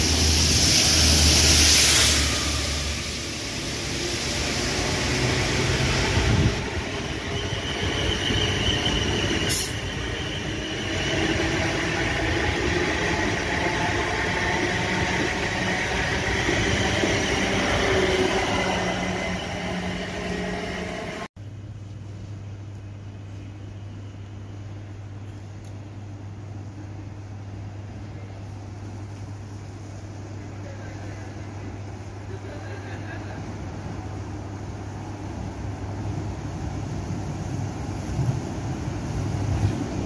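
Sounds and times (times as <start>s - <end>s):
train wheels rumbling on rail: 0.0s - 21.3s, 29.0s - 40.0s
high wheel squeal: 4.6s - 21.3s.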